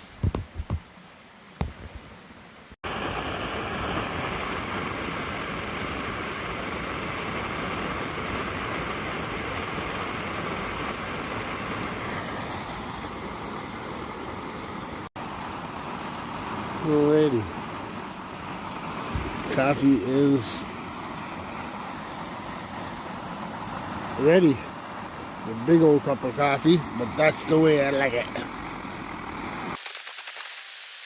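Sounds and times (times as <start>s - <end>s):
light knocks: 1.6s - 2.1s
camp stove burner rushing: 2.8s - 31.0s.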